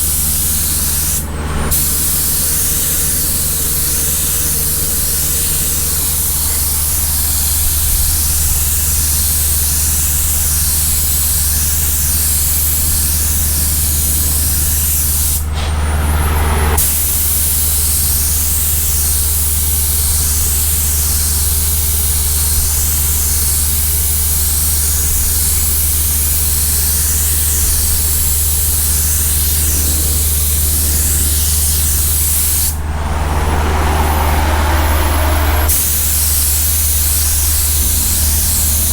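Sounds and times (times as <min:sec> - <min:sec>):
spray gun hissing: 0:00.0 - 0:38.9
low hum: 0:32.7 - 0:38.9.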